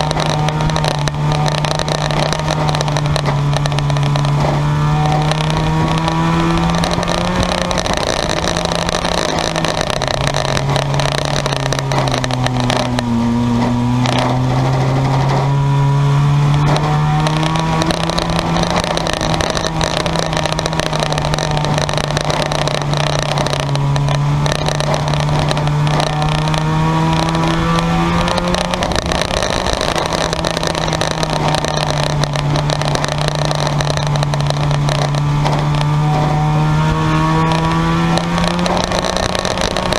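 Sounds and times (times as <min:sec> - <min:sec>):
race car engines revving: 0:00.0 - 0:39.9.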